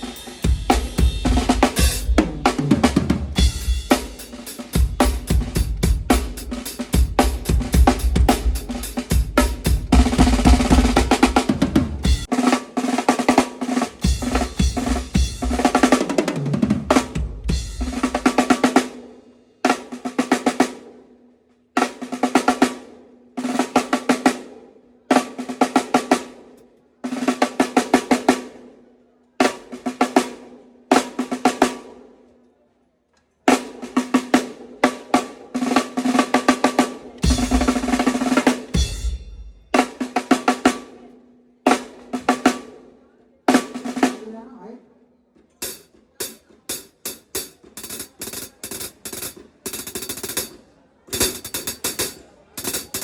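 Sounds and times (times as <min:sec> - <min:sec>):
bass drum: 0:00.0 - 0:04.2, 0:04.8 - 0:12.3
snare drum fills: 0:00.0 - 0:19.0, 0:33.5 - 0:41.0.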